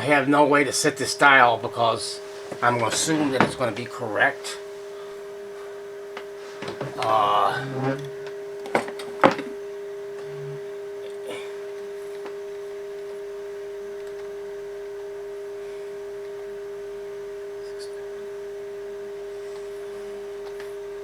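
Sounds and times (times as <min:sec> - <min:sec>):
radio test tone: 0:10.2 - 0:10.7.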